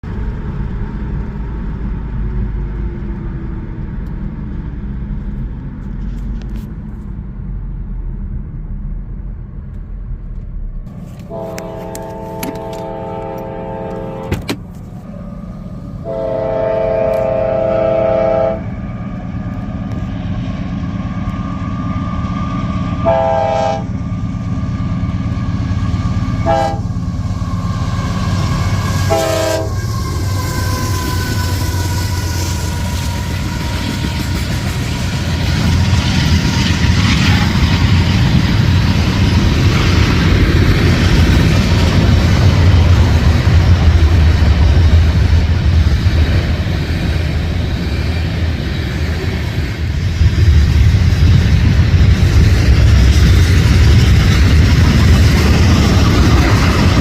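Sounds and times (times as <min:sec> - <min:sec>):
train rumbling: 0:00.0 - 0:57.0
train air horn blasts: 0:11.2 - 0:14.5, 0:16.0 - 0:18.8, 0:23.0 - 0:23.9, 0:26.3 - 0:34.7.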